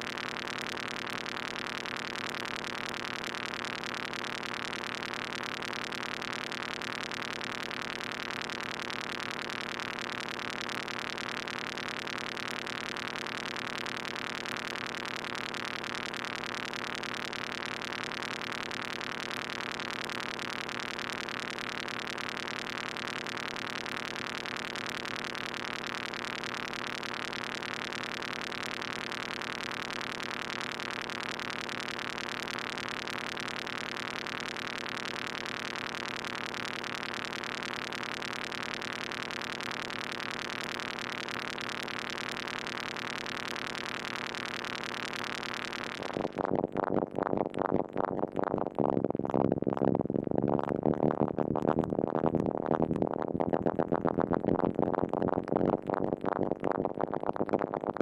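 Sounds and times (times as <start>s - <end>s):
buzzing synthesizer drone: 0.0s - 58.0s.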